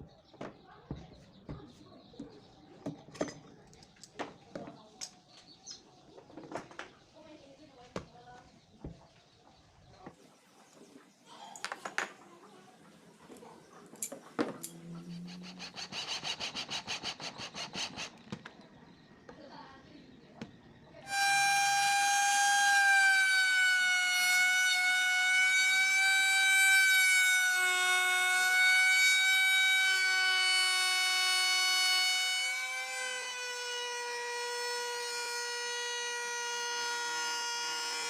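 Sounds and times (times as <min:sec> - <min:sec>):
power tool motor whining: 0:14.6 - 0:18.2, 0:21.1 - 0:38.0.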